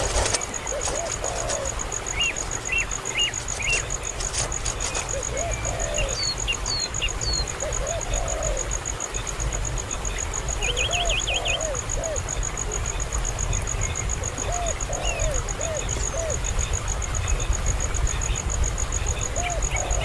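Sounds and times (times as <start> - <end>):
lower arching bird calls: 0.0 - 9.1, 10.5 - 12.7, 13.8 - 16.9, 19.2 - 20.0.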